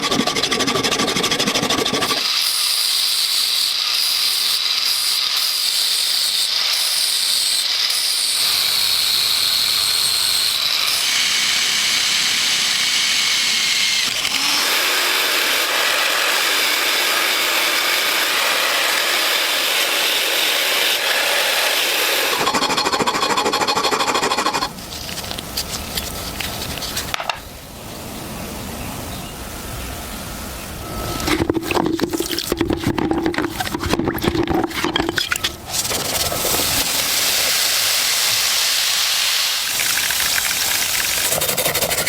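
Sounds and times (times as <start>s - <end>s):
small power tool cutting metal: 0.0s - 24.7s, 35.3s - 42.0s.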